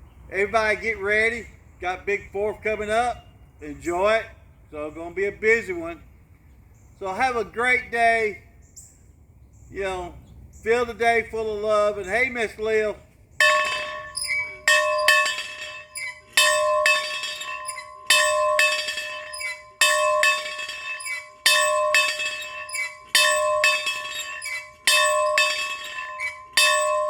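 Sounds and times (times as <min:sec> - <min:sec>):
bell ringing: 0:13.4 - 0:27.0.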